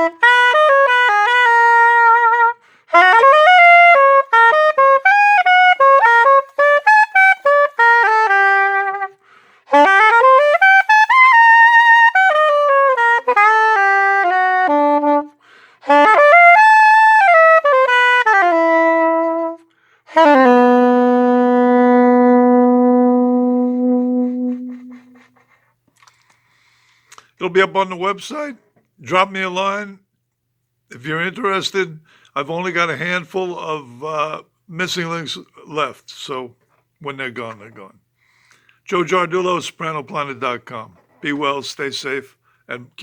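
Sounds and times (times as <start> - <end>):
soprano saxophone playing: 0.0 - 25.6
player breathing: 2.6 - 2.9, 9.2 - 9.7, 15.4 - 15.8, 24.2 - 27.4, 38.2 - 38.8.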